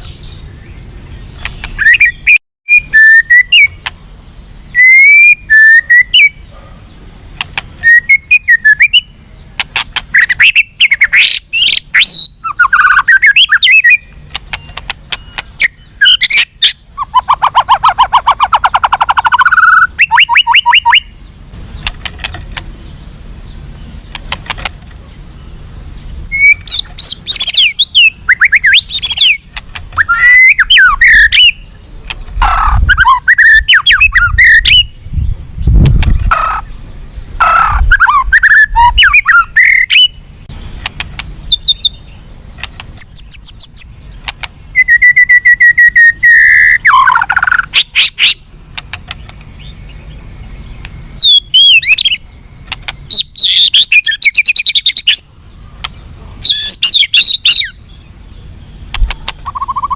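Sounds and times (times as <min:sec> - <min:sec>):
songbird singing whistled phrases: 0:00.0 - 0:03.9, 0:04.7 - 0:06.5, 0:07.8 - 0:09.5, 0:10.1 - 0:21.2, 0:25.4 - 0:31.8, 0:32.6 - 0:35.8, 0:37.8 - 0:42.3, 0:43.0 - 0:48.4, 0:49.5 - 0:55.3, 0:56.4 - 0:58.5, 0:59.3 - 0:59.9
rapid bird trill: 0:00.0 - 0:59.9.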